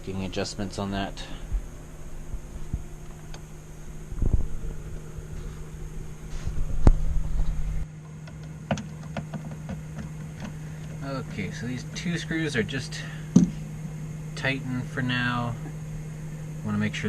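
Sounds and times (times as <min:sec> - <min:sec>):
low rumble: 0:00.0 - 0:07.9
steady low hum: 0:00.0 - 0:17.0.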